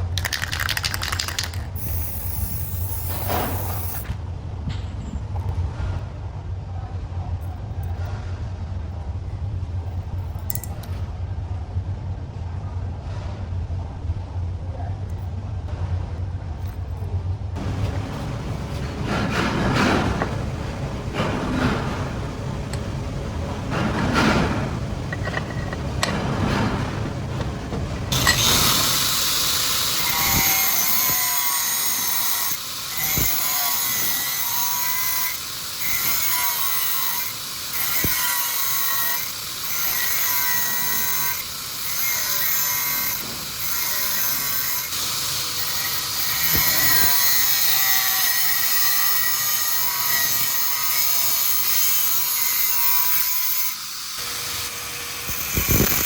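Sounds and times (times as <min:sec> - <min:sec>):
power tool whining: 0:01.8 - 0:04.1, 0:17.6 - 0:56.0.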